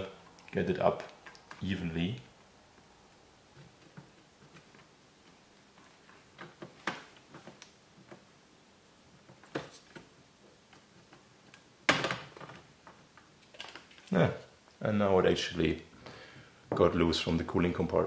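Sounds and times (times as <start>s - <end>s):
small clicks and taps: 3.5s - 8.3s.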